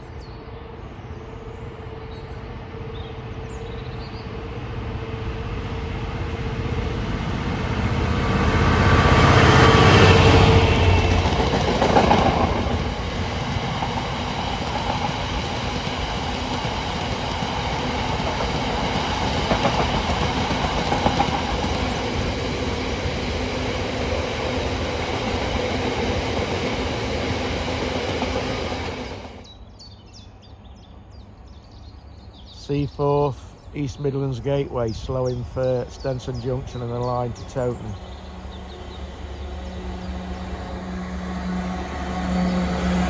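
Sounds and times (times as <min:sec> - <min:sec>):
wheels clacking over rail joints: 0:09.8 - 0:29.3.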